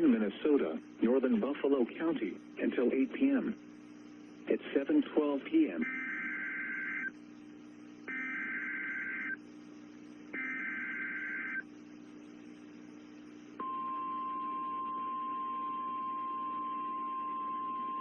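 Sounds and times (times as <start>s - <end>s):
quiet hum: 0.0s - 18.0s
steady warning alarm tone: 5.8s - 7.1s, 8.1s - 9.4s, 10.4s - 11.6s
buzzing digital data bursts: 5.8s - 7.2s, 8.0s - 13.0s.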